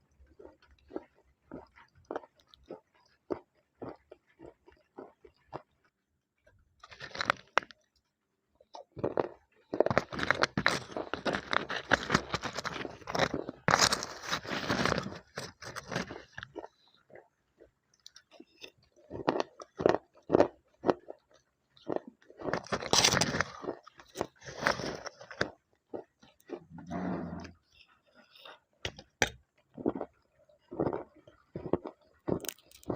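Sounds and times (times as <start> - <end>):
pencil being chewed crunching: 8.8 - 32.9.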